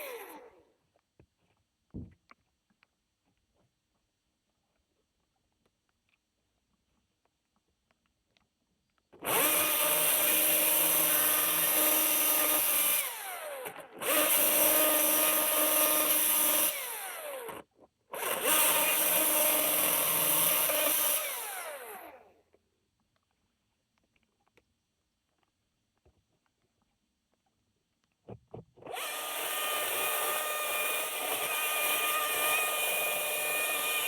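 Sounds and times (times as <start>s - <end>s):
chainsaw winding down whine: 0.0s - 0.6s, 9.2s - 17.6s, 18.2s - 22.2s, 28.9s - 34.0s
electric chainsaw running: 0.0s - 0.6s, 9.2s - 17.6s, 18.2s - 22.2s, 28.9s - 34.0s.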